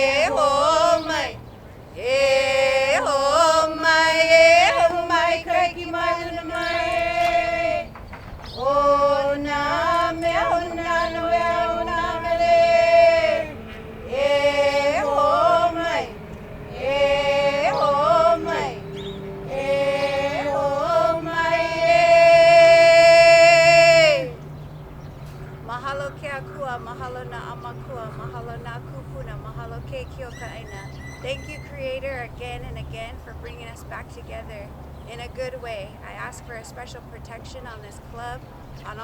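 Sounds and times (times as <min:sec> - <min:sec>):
person chanting: 0:02.0 - 0:07.9, 0:08.6 - 0:24.4.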